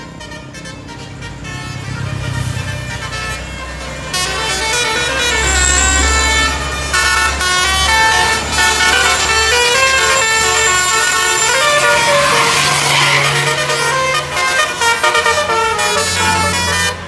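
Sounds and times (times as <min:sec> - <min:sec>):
musical air horn melody: 0:00.2 - 0:17.0
low engine hum: 0:00.9 - 0:16.7.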